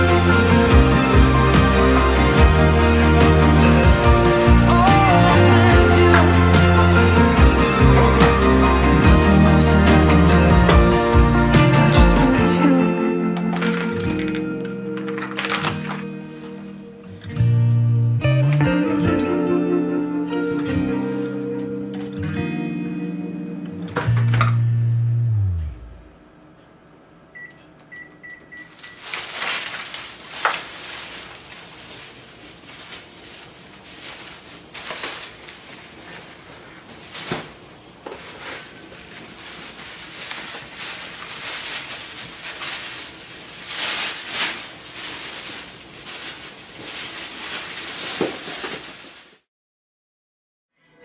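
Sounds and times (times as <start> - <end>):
rustling and rubbing: 15.0 - 17.0, 20.6 - 21.6, 28.9 - 49.4
appliance beeps: 27.3 - 29.1.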